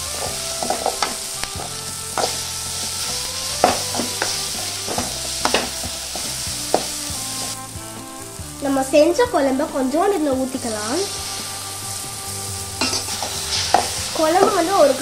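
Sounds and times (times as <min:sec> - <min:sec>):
spatula scraping pan: 0:00.0 - 0:02.6, 0:03.4 - 0:07.6, 0:12.7 - 0:15.0
food sizzling in oil: 0:00.0 - 0:15.0.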